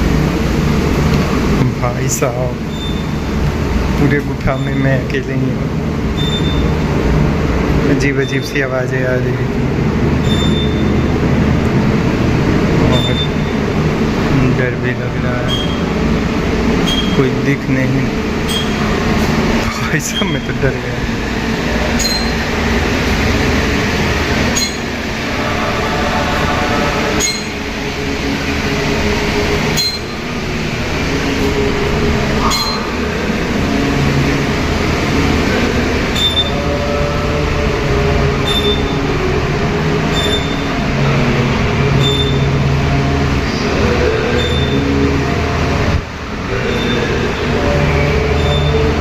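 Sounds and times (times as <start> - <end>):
eerie droning tones: 0.0 - 49.0.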